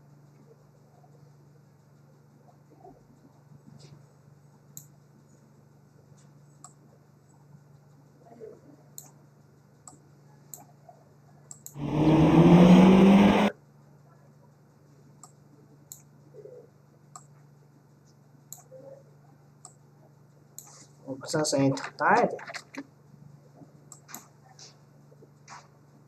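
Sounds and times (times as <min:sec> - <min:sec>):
low electrical hum: 0:00.0 - 0:26.0
computer mouse clicks: 0:11.5 - 0:11.8, 0:18.5 - 0:18.8, 0:23.9 - 0:24.3.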